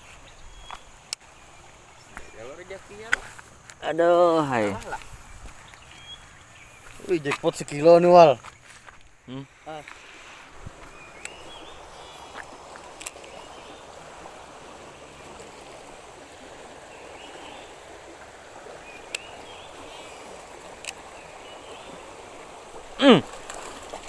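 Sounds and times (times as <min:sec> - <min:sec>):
river water rushing: 0:09.5 - 0:24.0.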